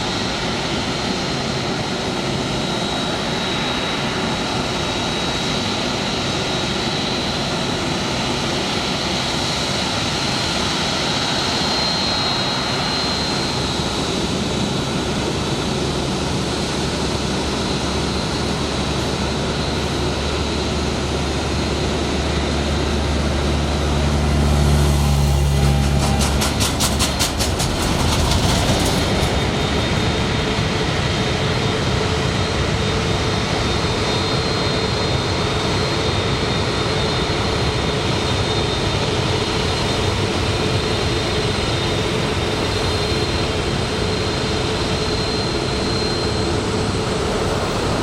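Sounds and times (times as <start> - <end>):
jet engines rushing and whining: 0.0 - 48.0
deep rumble: 22.7 - 30.8.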